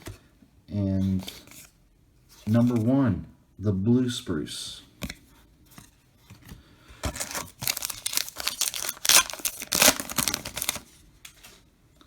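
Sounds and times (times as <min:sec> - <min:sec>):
wrapper crinkling and tearing: 0:07.1 - 0:10.9.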